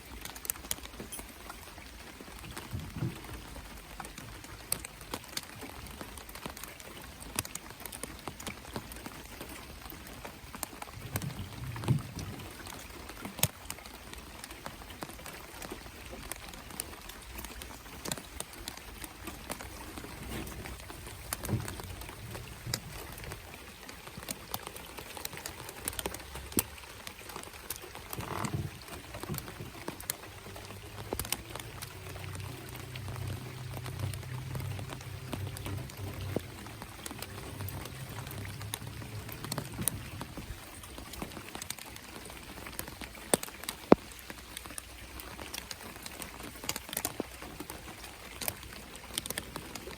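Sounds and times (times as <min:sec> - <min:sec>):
raindrops ticking nearby: 0:00.0 - 0:49.9
steady rain falling: 0:00.0 - 0:49.9
low dull thuds: 0:02.5 - 0:03.5.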